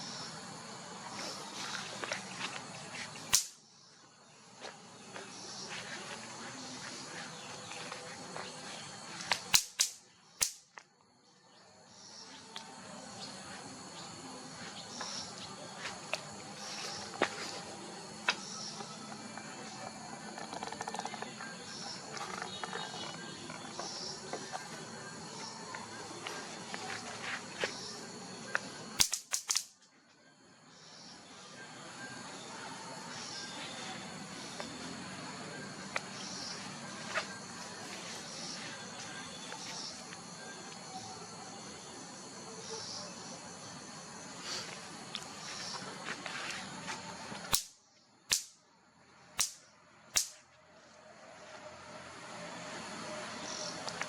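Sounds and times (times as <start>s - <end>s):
steady background hiss: 0.0s - 19.6s
sharp clicks: 3.3s - 3.6s, 9.3s - 10.6s, 29.0s - 29.7s, 47.5s - 48.6s, 49.4s - 49.6s, 50.2s - 50.4s
faint high-pitched chirping: 29.8s - 48.3s.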